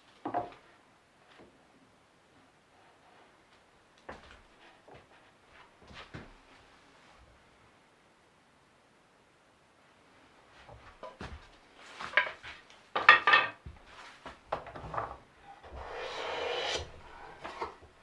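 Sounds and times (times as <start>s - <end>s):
hand tool scraping wood: 15.6s - 17.9s.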